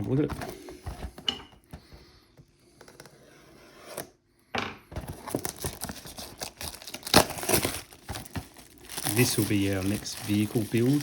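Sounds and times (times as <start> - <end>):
packaging rustling and crinkling: 5.0 - 11.0.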